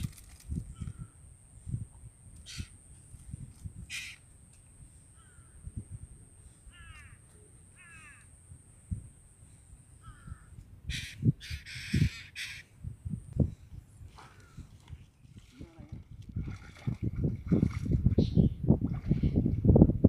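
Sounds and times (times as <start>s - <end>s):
bird calls: 2.4s - 2.8s, 3.9s - 4.2s, 10.0s - 12.7s
water splashing and sloshing: 14.1s - 19.8s.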